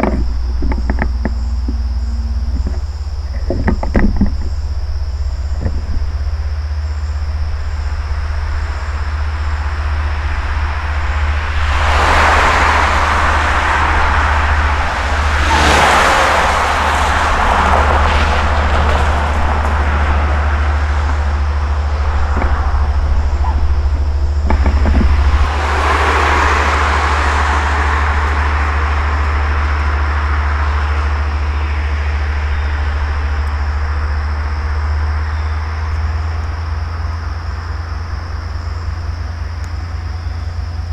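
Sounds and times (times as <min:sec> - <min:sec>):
knocks: 0:00.0 - 0:06.4, 0:18.6 - 0:25.5
train low rumble: 0:00.0 - 0:40.9.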